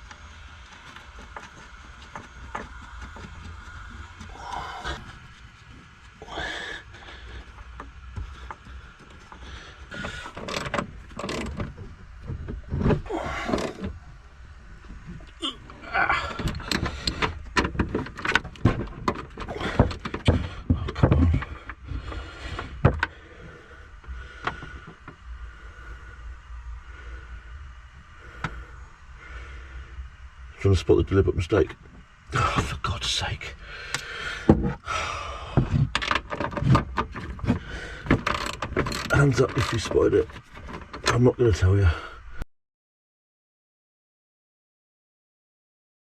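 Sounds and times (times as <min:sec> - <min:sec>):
faint low rumble: 0:00.0 - 0:36.0.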